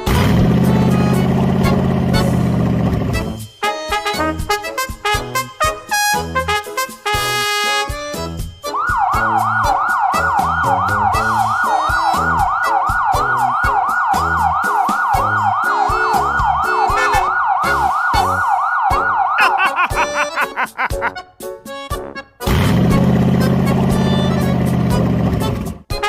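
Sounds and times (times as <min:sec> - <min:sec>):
background music with beat: 0:00.0 - 0:02.6, 0:03.2 - 0:22.3, 0:25.8 - 0:26.0
emergency siren yelping: 0:08.6 - 0:20.4.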